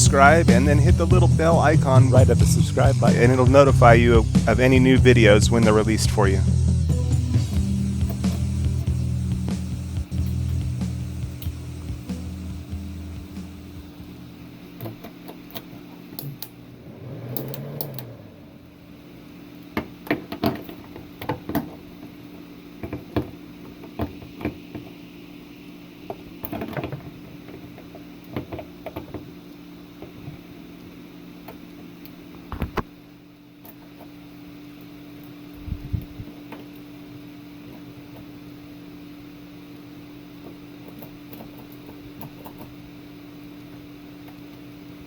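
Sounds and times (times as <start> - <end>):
low electrical hum: 0.0 - 45.0
clicks and knocks of handling: 26.1 - 29.3.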